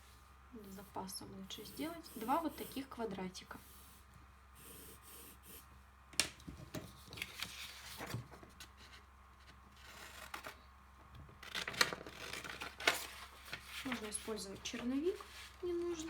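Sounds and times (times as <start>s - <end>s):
paper rustling: 6.9s - 9.0s, 11.4s - 16.0s.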